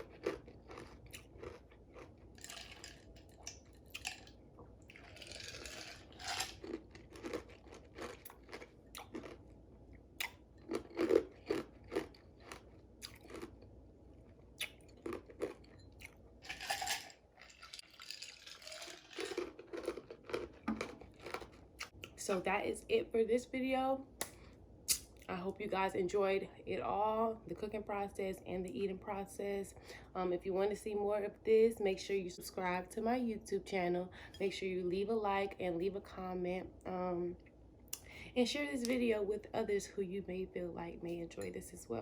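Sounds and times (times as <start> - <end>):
ice crunching between teeth: 0.0 - 9.4, 10.2 - 13.6, 14.6 - 21.9.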